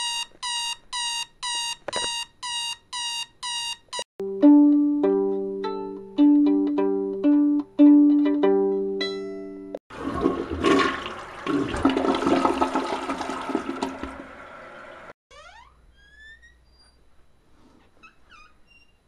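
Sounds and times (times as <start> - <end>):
plucked alarm melody: 2.5 - 9.7
toilet flushing: 9.9 - 15.2.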